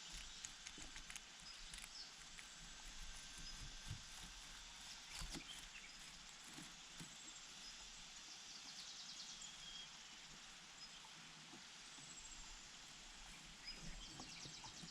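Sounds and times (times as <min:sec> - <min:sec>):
steady hiss: 0:00.0 - 0:14.9.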